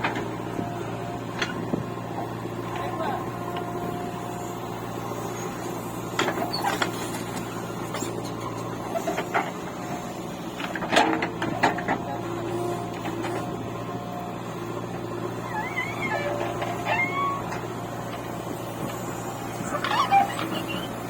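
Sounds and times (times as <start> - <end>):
machinery engine drone: 0.0 - 21.0.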